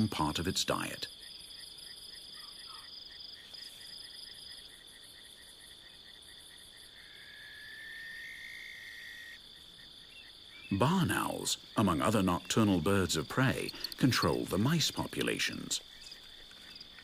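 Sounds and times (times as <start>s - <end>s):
crickets trilling: 0.0s - 17.0s
lower insect trill: 0.0s - 17.0s.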